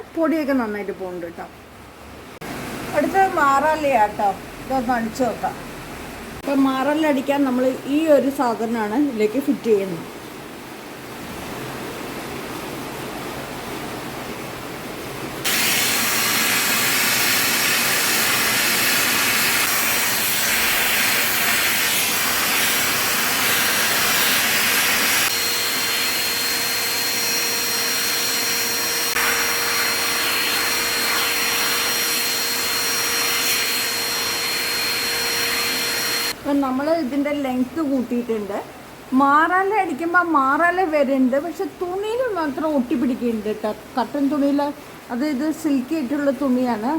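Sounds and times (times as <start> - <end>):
vacuum cleaner running: 15.4 - 36.4.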